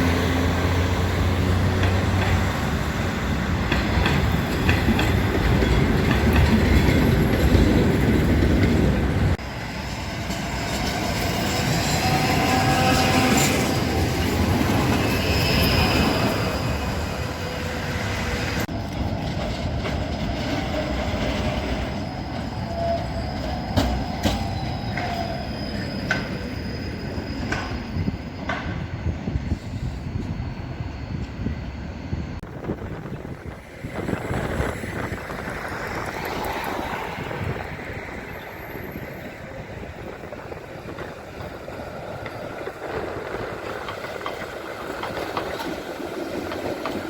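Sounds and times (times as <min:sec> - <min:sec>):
wheels squealing: 0:00.0 - 0:32.3
tram wheels rumbling on rails: 0:00.0 - 0:47.0.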